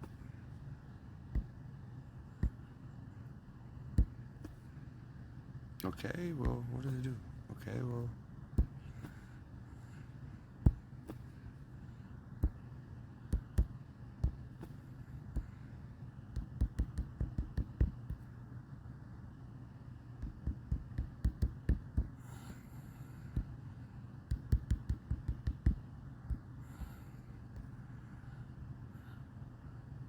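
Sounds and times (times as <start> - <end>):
steady low hum: 0.0 - 30.0
fingers tapping on touchscreen: 1.4 - 1.6, 4.0 - 4.6, 10.7 - 11.2, 12.4 - 12.7, 13.3 - 14.8, 16.3 - 18.2, 20.2 - 22.2, 24.3 - 26.5.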